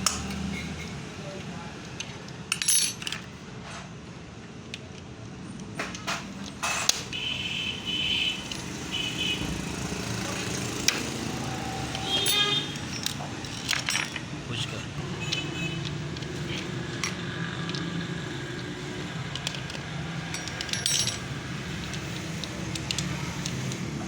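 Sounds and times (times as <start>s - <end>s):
metal tools clinking and knocking: 1.8s - 3.9s, 8.2s - 24.0s.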